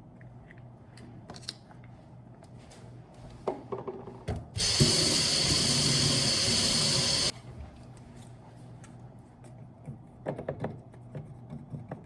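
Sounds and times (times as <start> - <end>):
small appliance motor whirring: 4.6 - 7.3.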